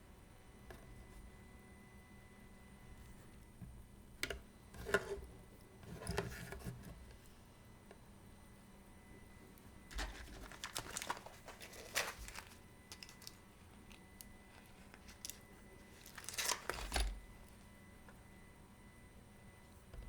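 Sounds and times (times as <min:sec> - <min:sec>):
rustling and crinkling: 0:09.9 - 0:17.7.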